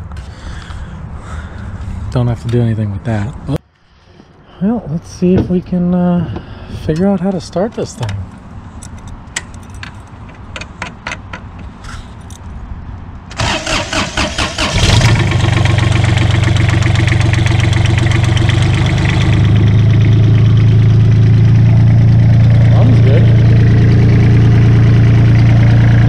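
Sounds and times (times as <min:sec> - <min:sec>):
diesel engine cranking and idling: 0:13.3 - 0:26.0.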